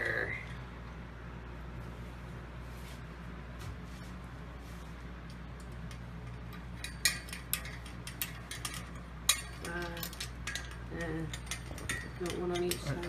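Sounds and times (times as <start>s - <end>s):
small metal parts clinking: 5.6s - 13.0s.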